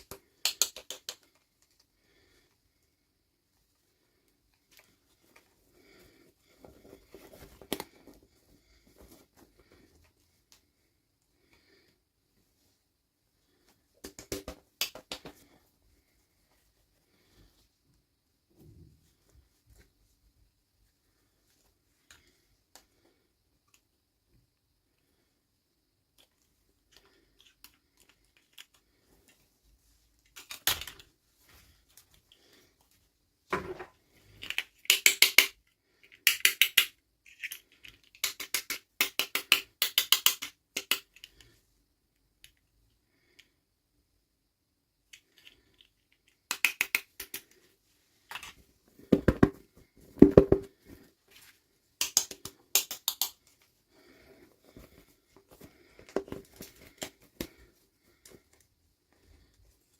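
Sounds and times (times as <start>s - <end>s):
plastic toy pieces clicking: 0.0s - 1.4s, 34.4s - 41.4s, 45.1s - 47.5s, 52.0s - 53.4s.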